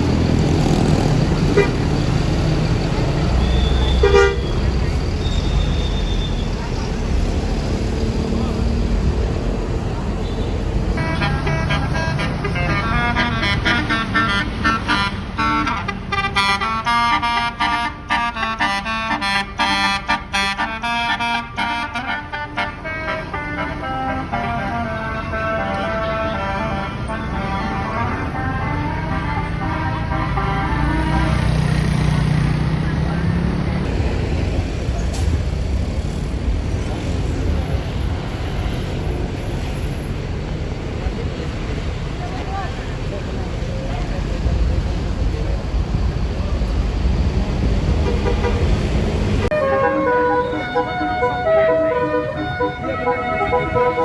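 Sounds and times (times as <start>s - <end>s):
bus engine rumble: 0.0s - 54.0s
heavy vehicles passing: 0.0s - 54.0s
traffic: 0.0s - 54.0s
musical air horn melody: 4.0s - 4.5s, 11.0s - 31.4s, 49.4s - 54.0s.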